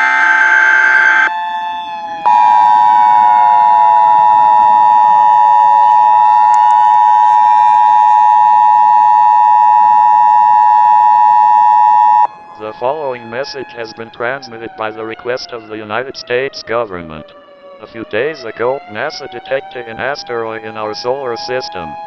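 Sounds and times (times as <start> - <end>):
faint tone sliding downward: 0.0 - 13.1
electronic two-tone alert signal: 2.3 - 12.3.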